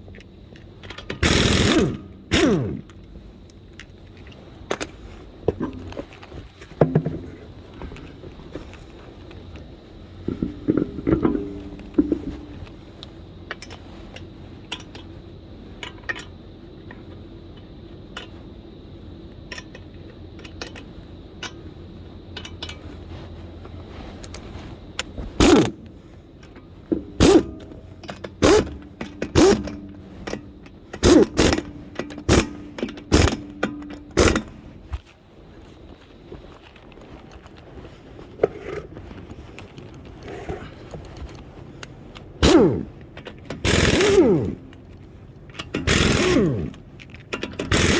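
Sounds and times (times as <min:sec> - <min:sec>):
wheel parts clicking: 0:00.0 - 0:06.3, 0:10.2 - 0:15.2, 0:24.2 - 0:35.1, 0:39.5 - 0:47.9
power tool bursts on wheel nuts: 0:00.9 - 0:03.0, 0:10.3 - 0:12.6, 0:25.4 - 0:26.0, 0:26.9 - 0:34.8, 0:42.4 - 0:44.9, 0:45.6 - 0:47.9.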